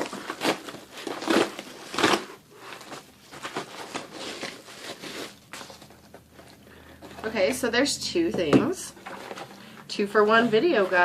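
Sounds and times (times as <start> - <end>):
packaging crinkling: 0.0 - 7.3.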